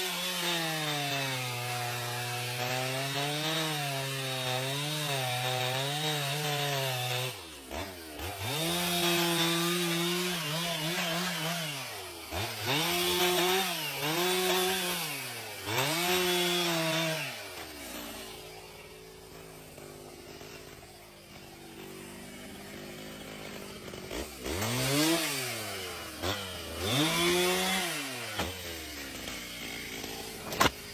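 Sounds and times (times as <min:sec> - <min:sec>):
chainsaw revving while cutting wood: 0:00.0 - 0:30.9.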